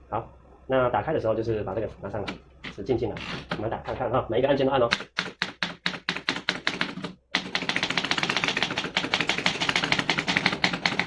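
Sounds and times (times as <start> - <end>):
typewriter keys clacking: 4.9 - 11.0.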